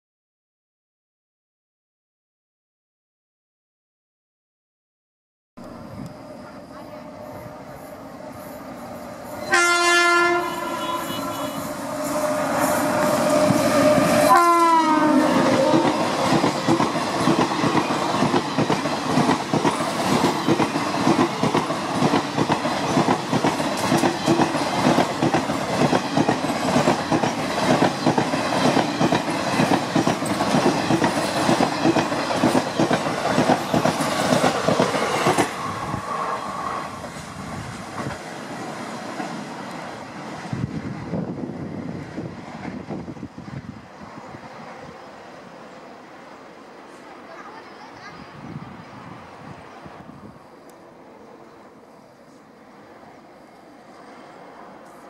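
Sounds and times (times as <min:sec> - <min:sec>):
train horn: 0:09.4 - 0:16.2
train wheels clacking over rail joints: 0:15.3 - 0:35.6.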